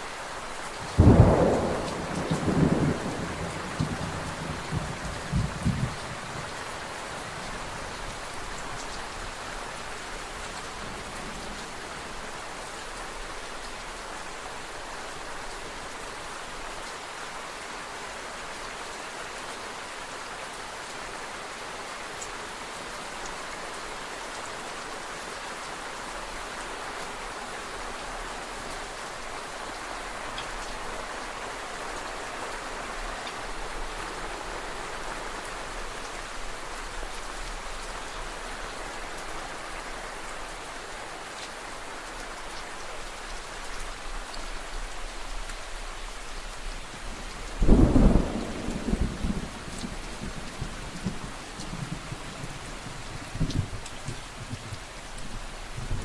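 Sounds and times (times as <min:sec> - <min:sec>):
steady rain falling: 0:00.0 - 0:56.0
low rumble of thunder: 0:00.8 - 0:08.0, 0:47.0 - 0:56.0.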